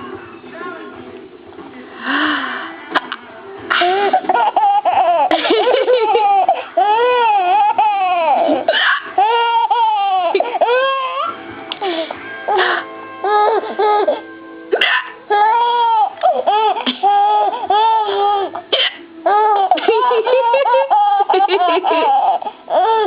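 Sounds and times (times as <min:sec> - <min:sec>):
baby laughing: 0:03.7 - 0:11.3, 0:15.0 - 0:18.6, 0:19.3 - 0:23.0.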